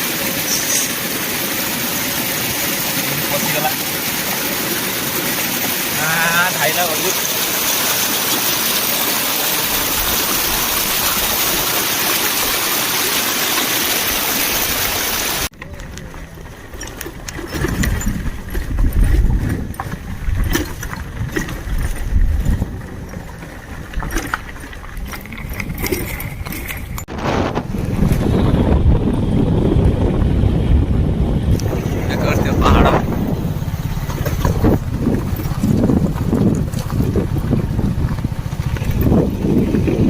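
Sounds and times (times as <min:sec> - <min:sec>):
waterfall rushing: 0:00.0 - 0:15.5
low uneven rumble: 0:15.5 - 0:40.0
wind buffeting microphone: 0:15.7 - 0:40.0.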